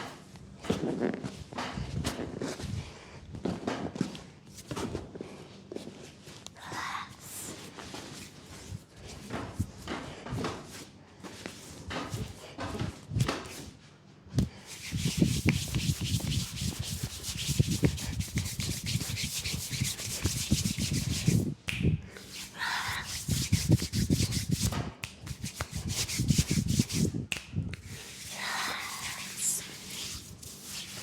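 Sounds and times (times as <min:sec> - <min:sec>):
hands rubbing skin: 0:14.4 - 0:31.0.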